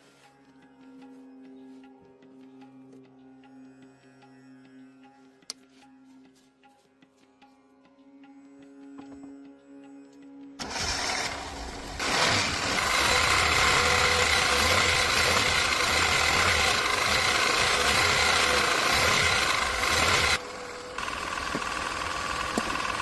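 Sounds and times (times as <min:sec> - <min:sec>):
car engine running: 0:10.6 - 0:23.0.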